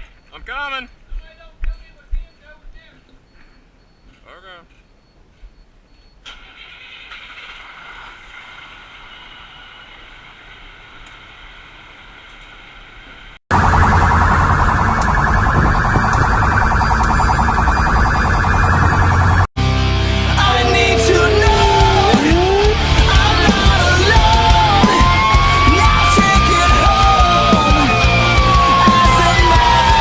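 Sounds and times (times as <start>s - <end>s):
steady vehicle noise: 3.2s - 30.0s
electronic siren warbling: 13.5s - 19.5s, 20.4s - 30.0s.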